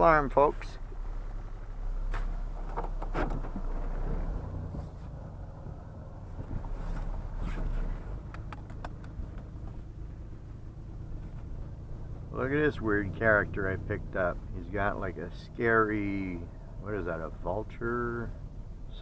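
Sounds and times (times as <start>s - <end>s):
vehicle engine and road noise: 0.0s - 19.0s
light clicks and knocks: 6.4s - 9.8s.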